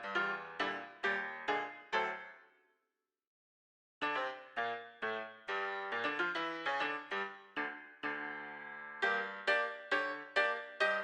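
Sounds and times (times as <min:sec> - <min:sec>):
keyboard chords: 0:04.0 - 0:11.0.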